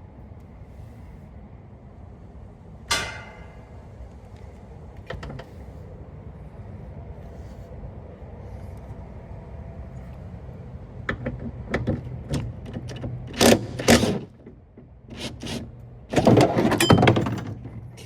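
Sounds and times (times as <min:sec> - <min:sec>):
metal clicks and clunks: 0:02.9 - 0:03.6, 0:11.0 - 0:17.9
metal bangs and scrapes: 0:02.9 - 0:03.7.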